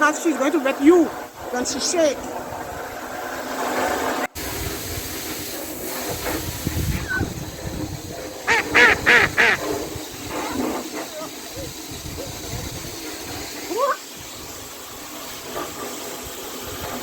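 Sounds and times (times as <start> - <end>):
steady hiss: 0.0 - 17.0
ducks quacking: 8.4 - 11.0.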